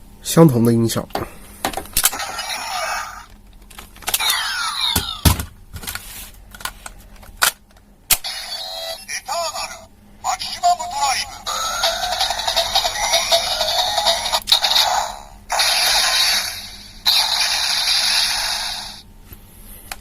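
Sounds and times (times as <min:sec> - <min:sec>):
electronic toy sound effects: 0:02.1 - 0:03.4, 0:04.1 - 0:05.4, 0:08.2 - 0:19.0.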